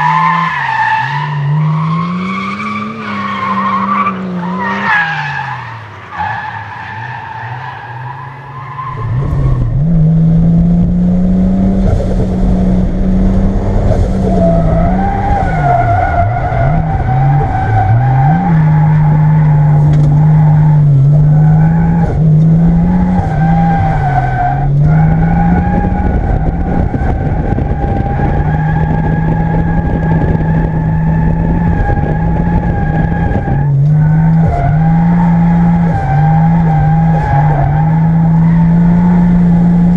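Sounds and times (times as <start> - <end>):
tyres squealing and skidding: 0.0 - 9.8, 14.2 - 22.2, 23.0 - 39.0
turbocharged engine pulling hard: 0.0 - 39.9.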